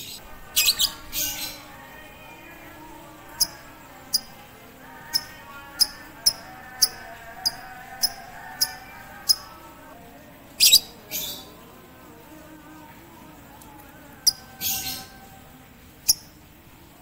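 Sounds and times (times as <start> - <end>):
warbling birdsong: 0.0 - 9.9, 10.6 - 11.8, 14.2 - 16.6
bird shrill chirps: 5.0 - 9.5.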